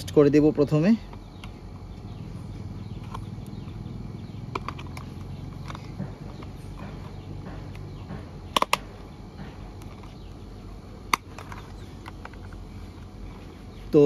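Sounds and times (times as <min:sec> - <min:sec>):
plastic toy parts clicking: 0:04.5 - 0:06.5, 0:08.5 - 0:08.8.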